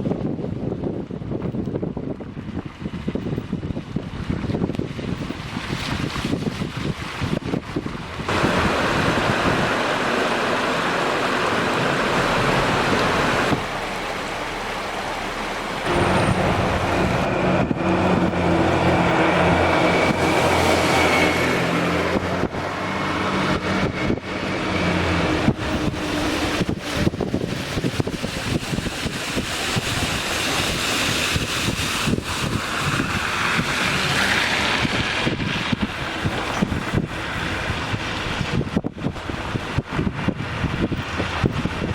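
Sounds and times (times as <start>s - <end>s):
steady rushing noise: 0.0s - 41.9s
wind buffeting microphone: 0.0s - 41.9s
vehicle engine humming: 7.8s - 41.9s.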